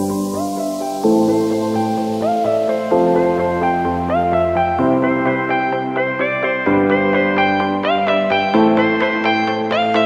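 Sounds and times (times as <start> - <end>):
soft sustained music chords: 0.0 - 10.0.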